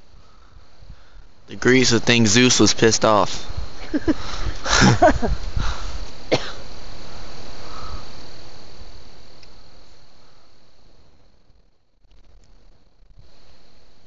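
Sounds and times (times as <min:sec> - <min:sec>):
night insects droning: 0:00.0 - 0:14.0
cough-like voice sound: 0:06.3 - 0:06.6.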